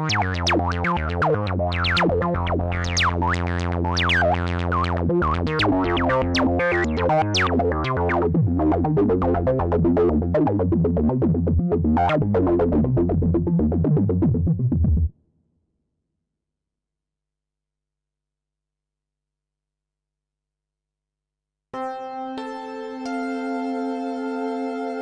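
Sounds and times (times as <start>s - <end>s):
synth bass line: 0.0s - 15.1s, 21.8s - 25.0s
synthesizer rhythmic pattern: 0.0s - 15.1s, 21.8s - 25.0s.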